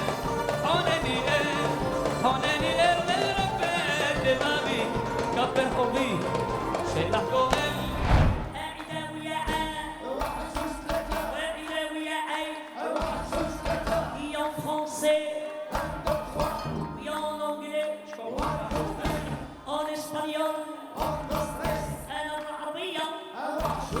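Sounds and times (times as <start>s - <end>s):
hand-drum percussion: 0.0s - 8.9s, 9.5s - 12.0s, 13.0s - 14.7s, 18.4s - 19.6s
person singing: 0.0s - 24.0s.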